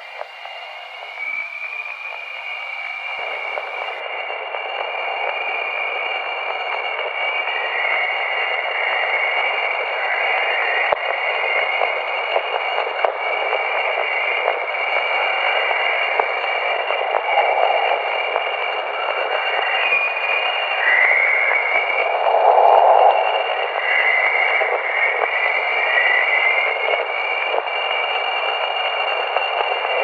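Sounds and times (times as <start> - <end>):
faint crackles: 0.0 - 4.0, 10.9 - 30.0
high whistling tones: 0.0 - 4.0
radio static hiss: 0.0 - 5.0, 7.0 - 30.0.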